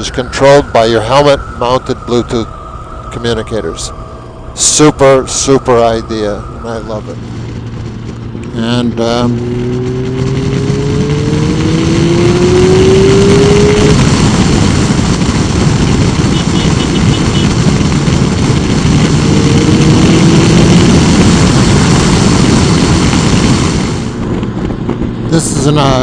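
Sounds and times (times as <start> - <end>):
wind rush through helmet: 0.0 - 26.0
motorcycle engine accelerating: 1.4 - 26.0.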